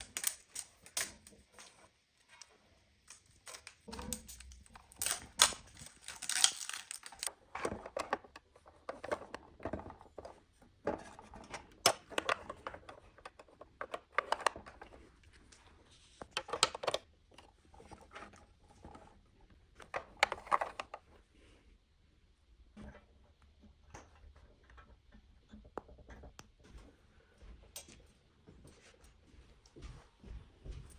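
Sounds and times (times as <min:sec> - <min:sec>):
plastic packaging crinkling: 0:00.0 - 0:01.4, 0:03.1 - 0:07.4
scratching: 0:03.1 - 0:10.4.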